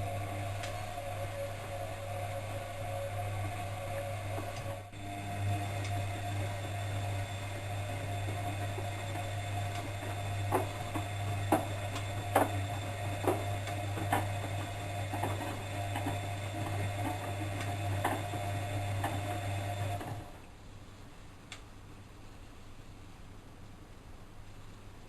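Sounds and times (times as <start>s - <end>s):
washing machine motor hum: 0.0s - 20.5s
washing machine drum knocks: 7.9s - 19.2s.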